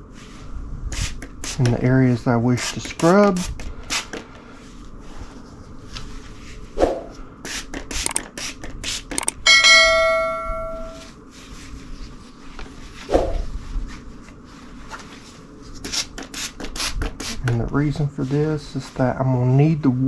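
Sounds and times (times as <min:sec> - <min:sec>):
bell-like chime: 0:09.5 - 0:11.1.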